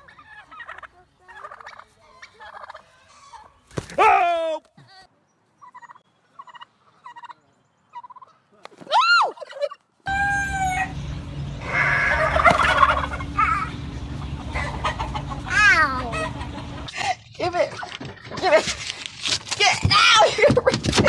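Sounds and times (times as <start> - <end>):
turkeys gobbling: 0.0 - 3.9, 5.6 - 8.4, 9.3 - 11.0, 11.6 - 18.4
fowl calls: 11.6 - 16.9.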